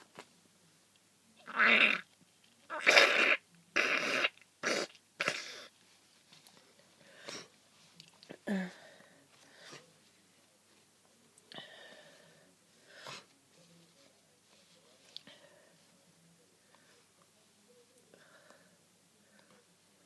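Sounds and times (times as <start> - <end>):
person blowing nose: 2.8 - 5.7
faint sniffs and breaths: 5.2 - 10.5, 11.5 - 19.8.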